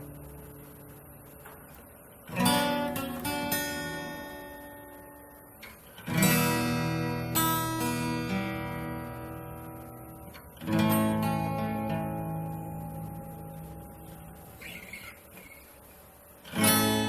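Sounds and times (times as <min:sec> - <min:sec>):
acoustic guitar chords strummed: 0:00.0 - 0:17.0.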